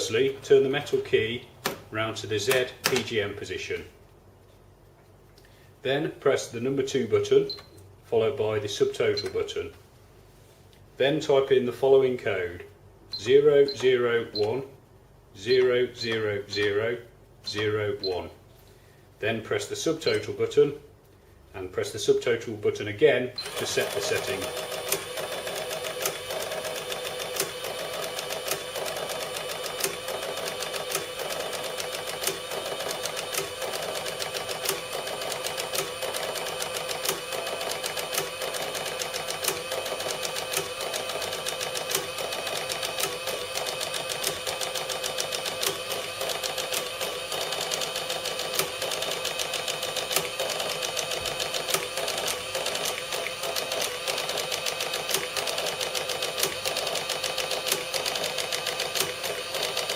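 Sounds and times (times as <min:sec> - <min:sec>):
cash register mechanical hum: 0:00.0 - 0:03.4, 0:13.1 - 0:14.8, 0:15.4 - 0:18.4, 0:19.4 - 0:20.6, 0:23.2 - 0:59.9
cash register clicking: 0:23.4 - 0:59.9.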